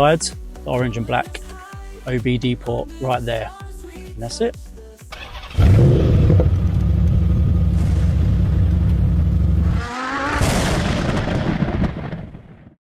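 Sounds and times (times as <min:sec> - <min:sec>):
car engine rumble: 0:05.3 - 0:11.1.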